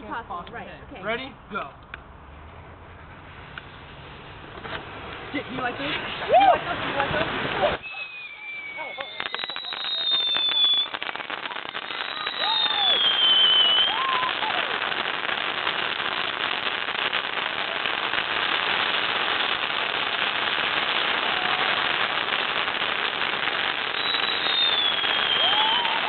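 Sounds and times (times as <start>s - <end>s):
fireworks crackling: 0.0s - 26.0s
falling firework whistle: 7.6s - 26.0s
rising and falling whistle: 7.8s - 14.6s, 23.8s - 26.0s.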